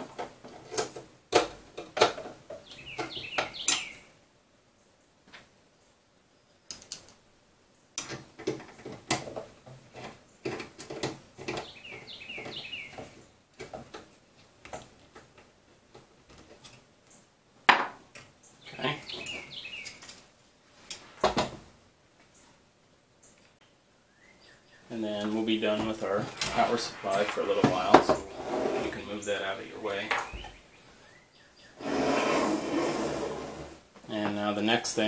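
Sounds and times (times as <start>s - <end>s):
bird chirping: 2.5s - 6.8s, 11.4s - 13.5s, 18.4s - 20.2s, 22.2s - 22.6s, 23.2s - 32.0s.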